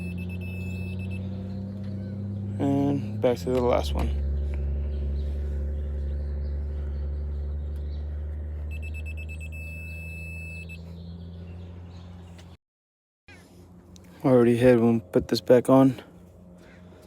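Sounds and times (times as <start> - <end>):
high electronic beep: 0.0 - 1.2, 8.7 - 10.8
low mechanical hum: 0.0 - 12.6.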